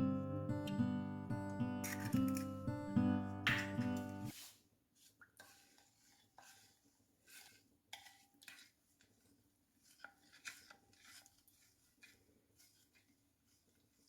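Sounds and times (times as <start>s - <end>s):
utensils scraping dishes: 1.8s - 2.8s.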